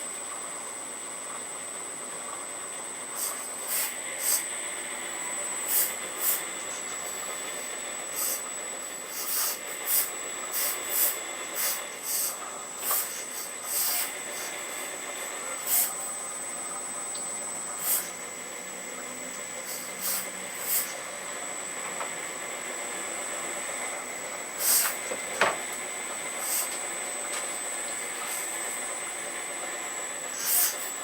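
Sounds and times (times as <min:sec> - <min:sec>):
excavator high-pitched whine: 0:03.0 - 0:31.0
hydraulic hissing bursts: 0:03.1 - 0:16.5, 0:17.6 - 0:18.6, 0:19.4 - 0:21.3, 0:24.5 - 0:31.0.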